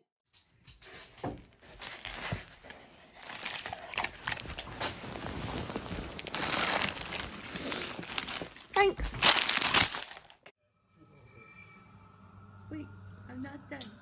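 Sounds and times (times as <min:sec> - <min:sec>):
crinkling and rustling: 0:00.3 - 0:10.5.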